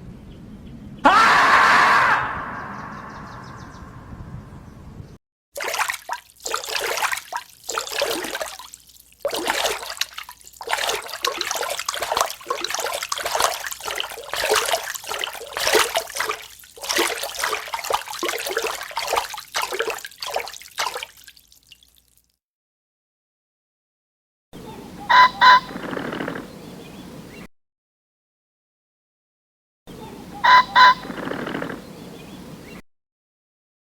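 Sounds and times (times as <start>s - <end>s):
water splashing and sloshing: 5.6s - 22.3s.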